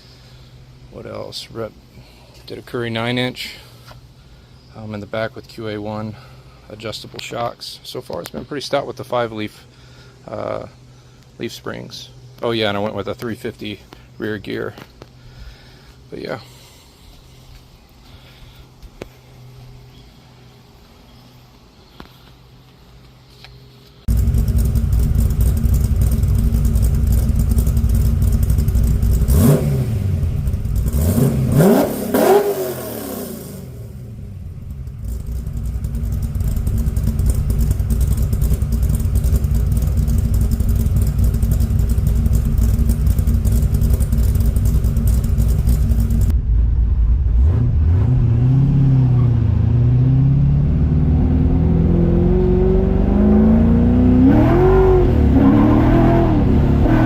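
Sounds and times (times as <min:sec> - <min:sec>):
car engine revving: 0:24.1 - 0:57.0.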